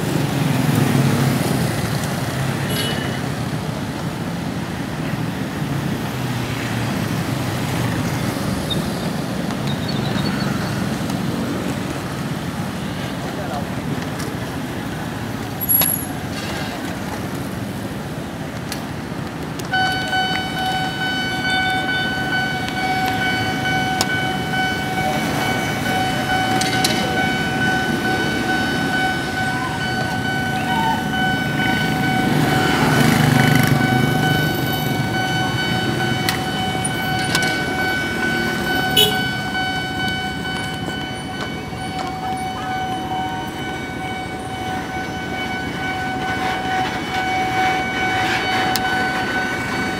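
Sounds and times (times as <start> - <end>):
horn steady note: 38.0 - 40.0.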